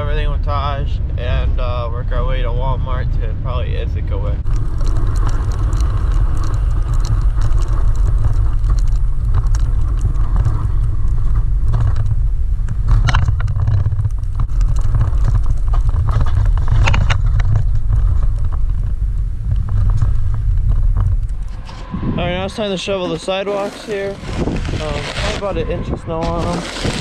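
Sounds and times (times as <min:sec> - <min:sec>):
truck engine and road rumble: 0:00.0 - 0:27.0
loud crackles: 0:04.2 - 0:27.0
clicks and rattles: 0:04.4 - 0:18.9.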